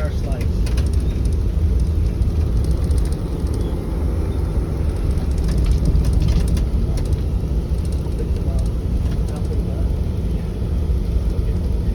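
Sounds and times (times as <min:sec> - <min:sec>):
vehicle engine rumbling: 0:00.0 - 0:11.9.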